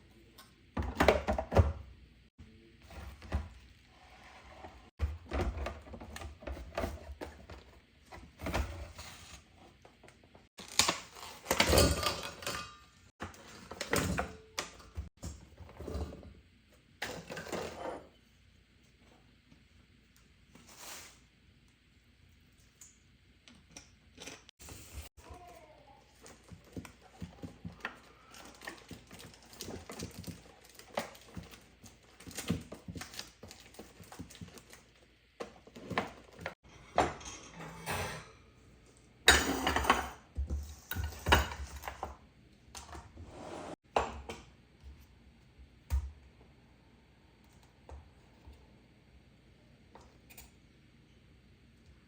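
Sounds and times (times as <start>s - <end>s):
dishes and utensils clattering: 10.8s - 15.1s, 17.0s - 18.1s, 35.8s - 38.6s, 39.2s - 42.2s.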